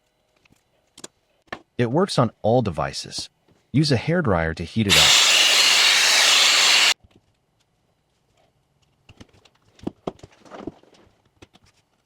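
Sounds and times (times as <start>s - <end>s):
hairdryer blowing: 4.9s - 7.0s.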